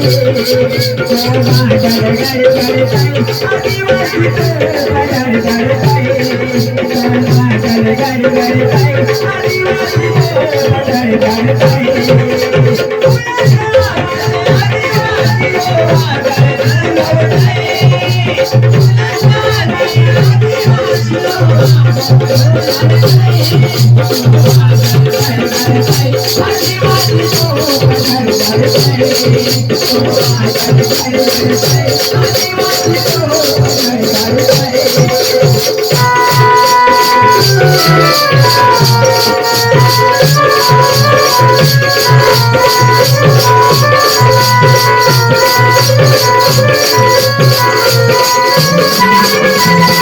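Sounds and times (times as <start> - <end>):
driving drum beat: 0.0 - 50.0
rattling shaker rhythm: 0.0 - 50.0
high held-note melody: 35.9 - 50.0.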